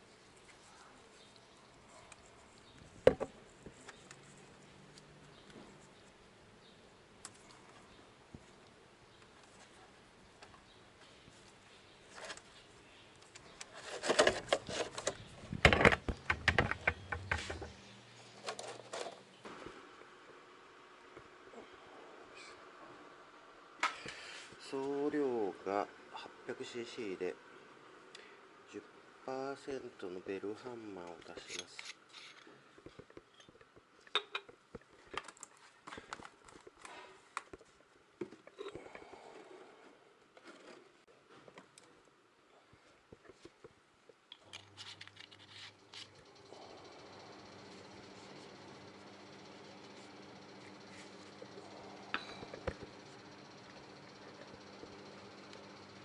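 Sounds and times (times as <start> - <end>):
small containers and tools clicking: 44.3 - 46.2.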